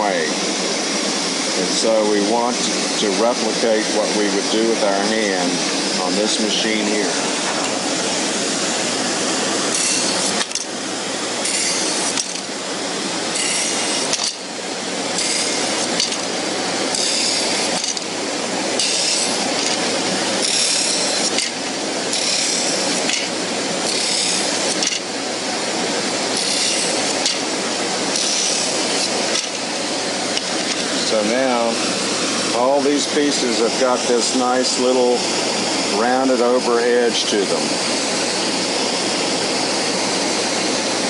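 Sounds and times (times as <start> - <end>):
power sander running: 0.0 - 36.9
higher-pitched sanding rasp: 9.5 - 10.6, 11.4 - 12.5, 13.2 - 14.5, 15.1 - 18.1, 18.8 - 25.2, 26.2 - 29.9.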